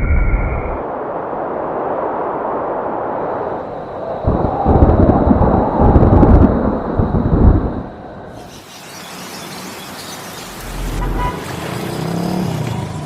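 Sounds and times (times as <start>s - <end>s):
bright hiss: 8.3s - 13.0s.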